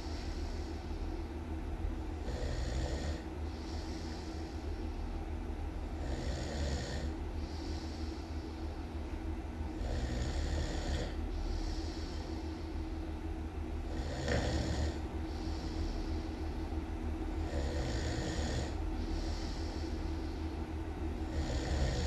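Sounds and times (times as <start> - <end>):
person snoring loudly: 2.2 - 4.0, 6.0 - 7.1, 9.8 - 12.2, 13.8 - 15.8, 17.4 - 19.8, 21.3 - 22.0.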